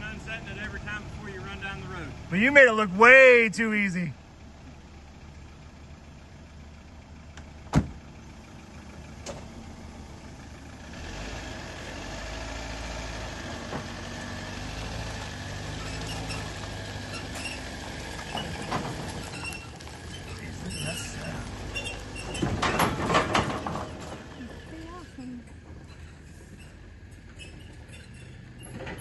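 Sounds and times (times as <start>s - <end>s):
engine idling: 0.0s - 29.0s
vehicle door shutting: 7.7s - 8.0s.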